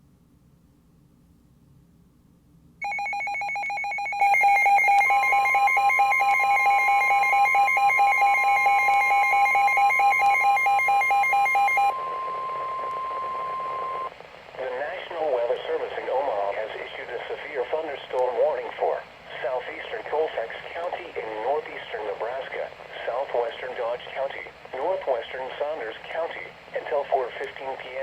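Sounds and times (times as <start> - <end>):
fast-pulsing electronic alarm beep: 2.8 - 14.1
steady weather radio alarm tone: 2.8 - 17.9.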